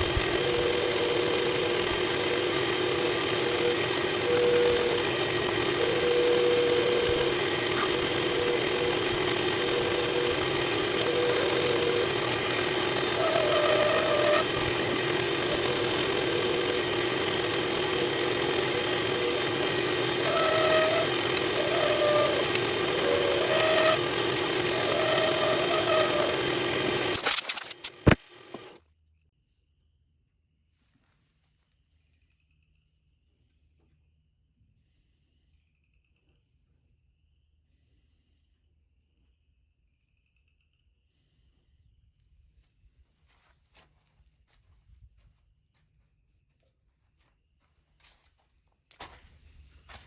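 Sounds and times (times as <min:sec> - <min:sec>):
wood lathe running: 0:00.0 - 0:28.8.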